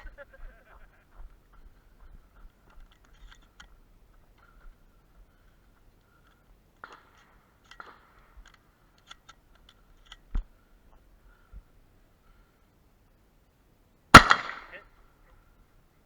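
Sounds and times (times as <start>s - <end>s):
faint clicks and knocks: 0.7s - 11.7s.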